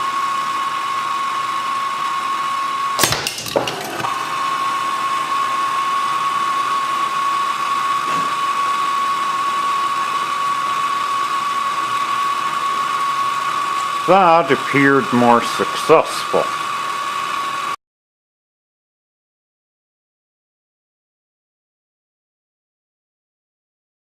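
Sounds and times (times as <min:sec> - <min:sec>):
torch hissing and whistling: 0:04.2 - 0:17.8.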